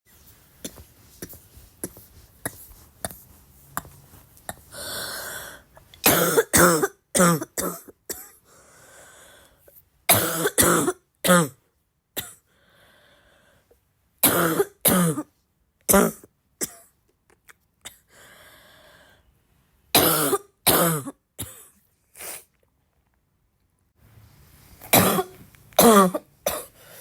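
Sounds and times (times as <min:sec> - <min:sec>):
person coughing: 0:06.0 - 0:08.4, 0:10.1 - 0:11.6, 0:14.2 - 0:15.3, 0:15.9 - 0:17.0, 0:20.0 - 0:21.8, 0:24.9 - 0:27.0.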